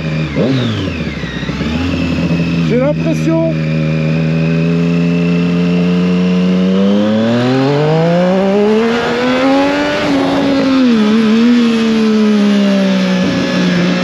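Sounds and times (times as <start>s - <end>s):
motorcycle engine accelerating: 0.0s - 14.0s
wind rush: 8.6s - 12.6s.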